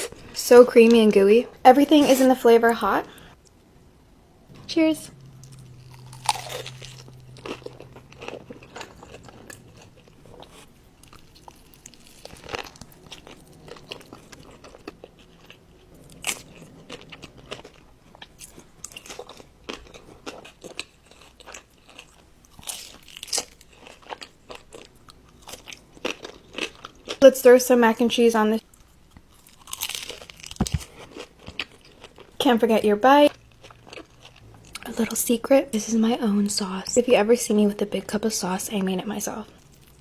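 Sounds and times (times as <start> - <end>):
crunchy chewing: 5.1 - 27.2, 28.7 - 32.4, 33.3 - 34.9.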